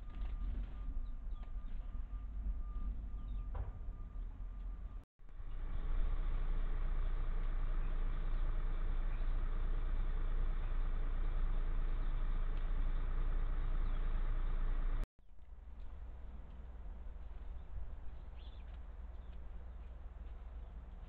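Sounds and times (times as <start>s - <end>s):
vehicle engine droning: 0.0s - 21.0s.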